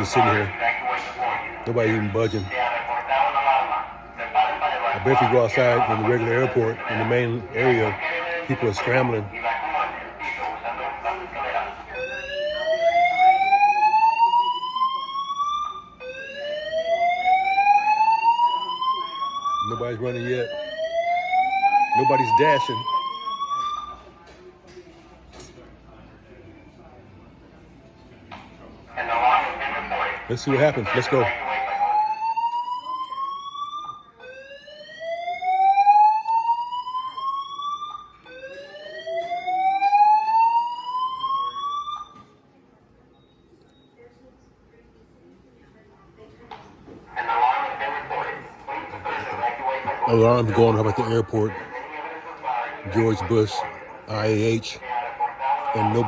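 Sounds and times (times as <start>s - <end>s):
fire alarm rising sweep tone: 11.8s - 24.1s, 30.6s - 42.2s.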